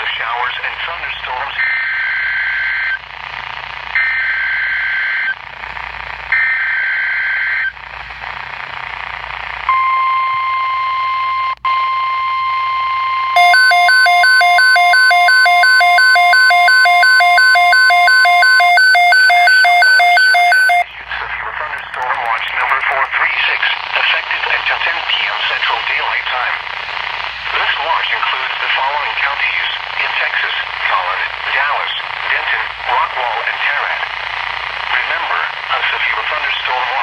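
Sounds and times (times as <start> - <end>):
two-pitch alternating alarm: 9.7 - 20.9
steady warning alarm tone: 12.3 - 20.9
screeching digital header bursts: 13.4 - 20.9.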